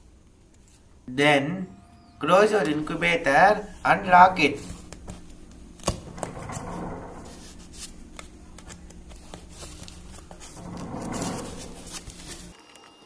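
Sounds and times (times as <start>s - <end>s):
steady low hum: 0.0s - 12.6s
cardboard rubbing and rustling: 4.6s - 12.6s.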